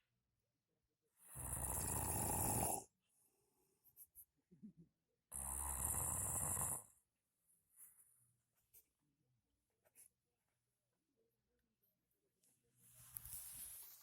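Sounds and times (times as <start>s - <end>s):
person snoring: 1.2s - 2.9s, 5.3s - 6.9s.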